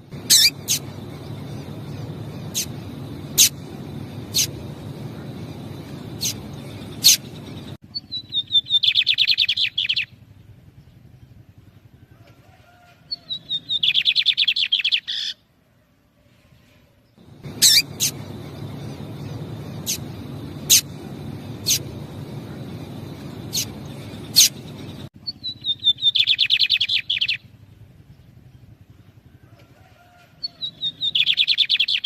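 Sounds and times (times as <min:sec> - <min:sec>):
bird song with chirps and trill: 0:00.0 - 0:15.4, 0:17.1 - 0:32.0
sharp bird call notes: 0:00.2 - 0:00.9, 0:17.4 - 0:24.8.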